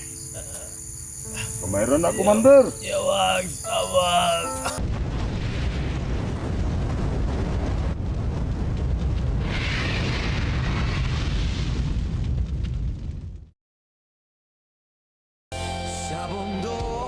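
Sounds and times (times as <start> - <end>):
bright hiss: 0.0 - 4.8
low rumble with crackle: 4.8 - 13.5.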